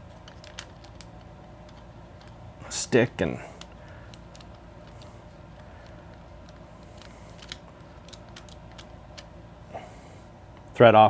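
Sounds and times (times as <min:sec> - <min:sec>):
steady low hum: 0:00.0 - 0:11.0
small plastic clicks: 0:03.6 - 0:09.3.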